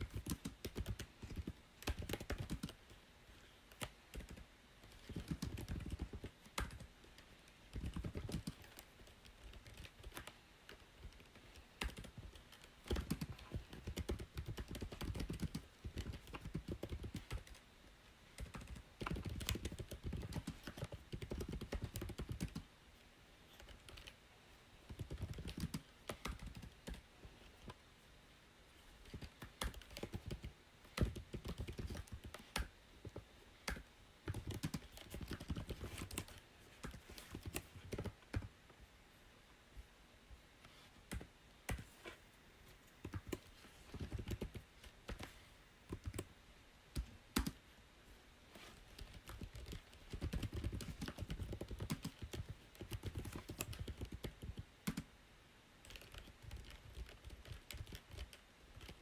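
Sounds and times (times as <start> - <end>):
typing on computer keyboard: 0.0 - 3.0, 3.7 - 17.6, 18.3 - 22.7, 23.5 - 24.2, 24.9 - 27.0, 29.0 - 38.5, 43.0 - 46.3, 46.9 - 47.6, 48.7 - 55.1, 55.8 - 59.0.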